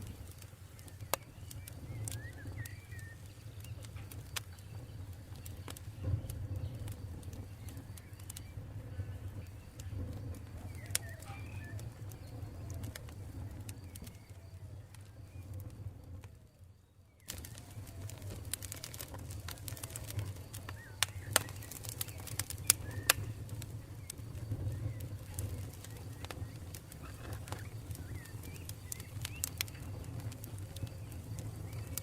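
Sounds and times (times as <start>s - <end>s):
campfire crackling and popping: 0.0s - 32.0s
faint bird calls: 7.3s - 15.6s, 17.2s - 32.0s.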